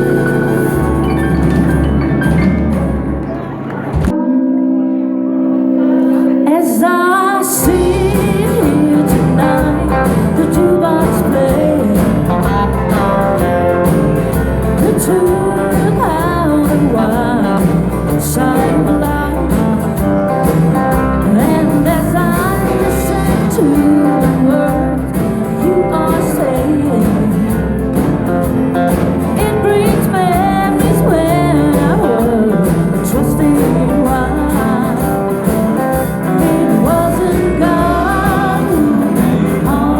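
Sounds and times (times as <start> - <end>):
live country band playing: 0.0 - 39.9
person singing: 4.1 - 13.9, 14.6 - 28.1, 29.3 - 39.9.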